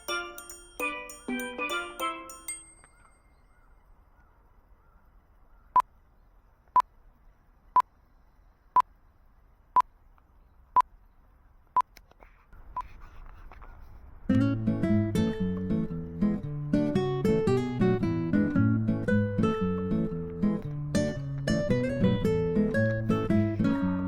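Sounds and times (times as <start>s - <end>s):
faint background noise: 0.0s - 24.0s.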